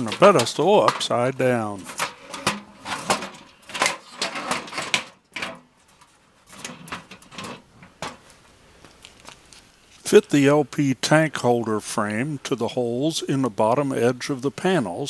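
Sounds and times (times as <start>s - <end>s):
metal parts knocking and clicking: 0.0s - 8.2s.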